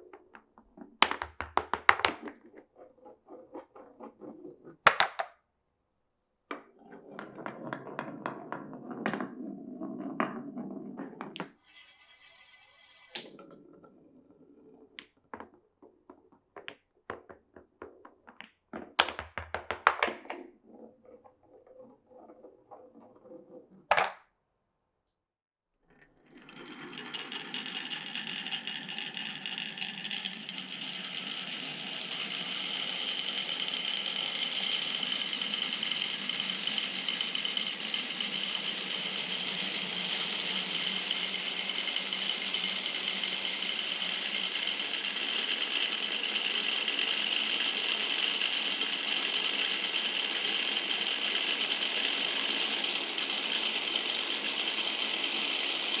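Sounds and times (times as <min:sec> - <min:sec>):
marbles rattling down wooden run: 0:01.0 - 0:05.3, 0:19.0 - 0:24.2, 0:26.4 - 0:56.0.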